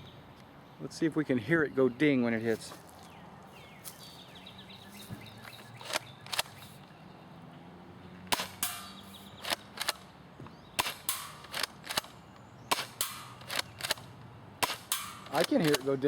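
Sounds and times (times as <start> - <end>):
airsoft shotgun shots and clicks: 5.4 - 6.8, 8.3 - 10.1, 10.8 - 16.0.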